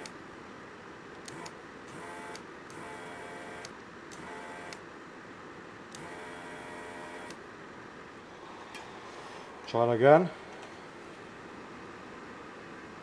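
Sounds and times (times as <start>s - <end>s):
vacuum pump humming: 0.0s - 0.2s, 1.2s - 4.8s, 5.9s - 7.4s
trigger clicks: 3.6s - 4.8s.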